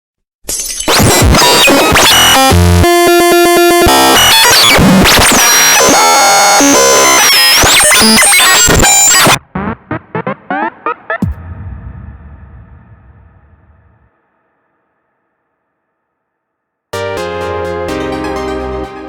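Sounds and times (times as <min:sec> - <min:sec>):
synthesized sound effects: 0:07.9 - 0:14.1.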